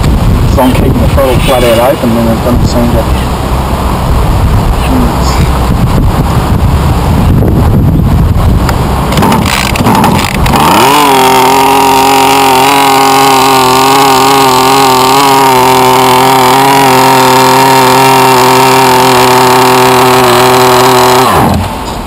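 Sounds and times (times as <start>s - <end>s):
small two-stroke engine revving: 8.8s - 22.0s.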